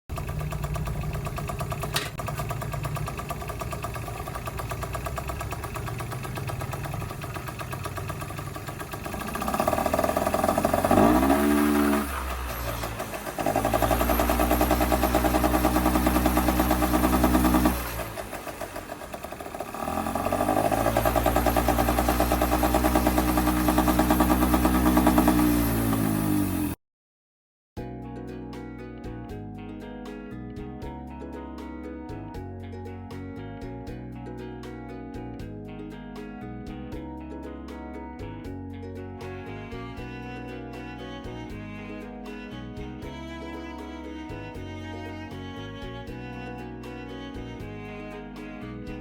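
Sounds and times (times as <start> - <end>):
scooter engine idling and revving: 0.0 - 26.8.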